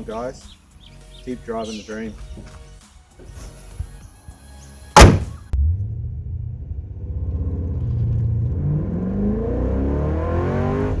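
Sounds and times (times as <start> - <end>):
engine starting and rumbling: 5.0 - 10.4.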